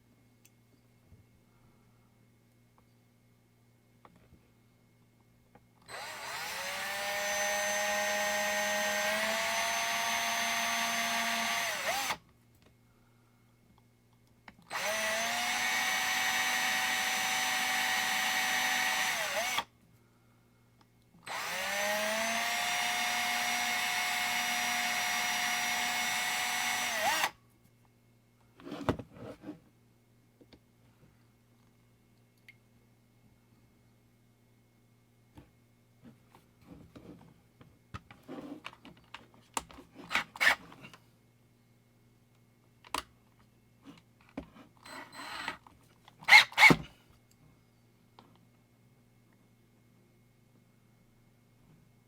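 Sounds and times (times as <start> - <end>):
small electric drill whining: 5.8 - 12.2, 14.7 - 19.7, 21.2 - 27.4, 44.8 - 45.6, 46.3 - 46.8.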